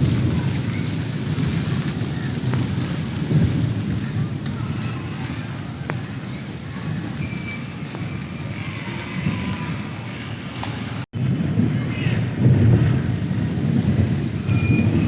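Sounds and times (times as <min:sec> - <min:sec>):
sharp raindrop hits: 0:00.0 - 0:08.5, 0:10.6 - 0:15.0
heavy rain pouring: 0:00.0 - 0:15.0.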